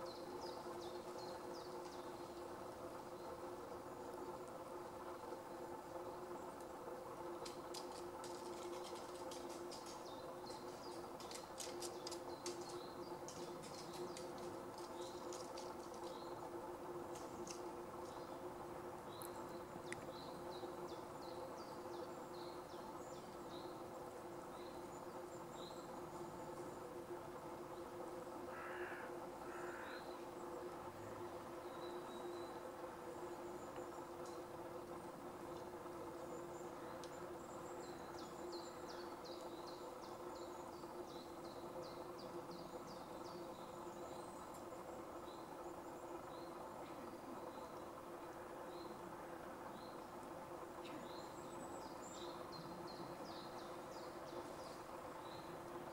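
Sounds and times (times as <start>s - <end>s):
low hum: 0.0s - 55.9s
small bird calling: 28.5s - 30.6s.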